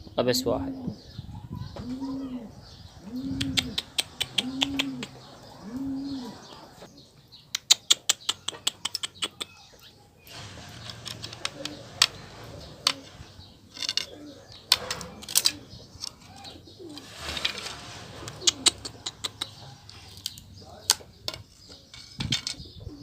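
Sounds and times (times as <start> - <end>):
pigeons cooing: 0.5 - 23.0
sharp clicks: 3.4 - 5.2, 7.5 - 9.6.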